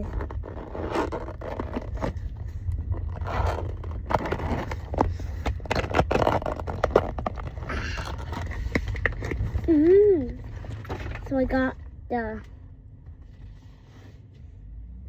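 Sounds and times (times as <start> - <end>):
packaging rustling and tearing: 0.0 - 11.3.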